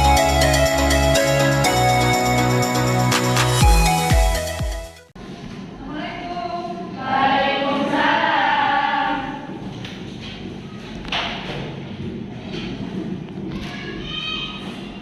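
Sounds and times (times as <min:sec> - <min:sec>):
group of voices singing: 0:07.0 - 0:09.6.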